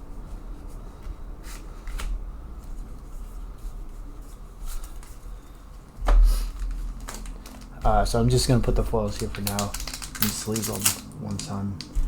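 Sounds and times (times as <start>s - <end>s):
low steady hum: 0.0s - 12.0s
cards sliding and rustling: 0.9s - 2.8s.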